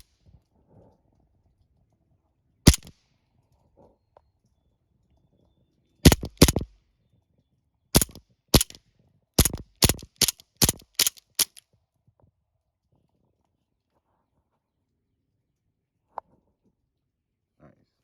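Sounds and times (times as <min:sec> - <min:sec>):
bb pistol shots: 0:02.7 - 0:02.9, 0:06.0 - 0:06.7, 0:08.0 - 0:08.8, 0:09.4 - 0:11.6.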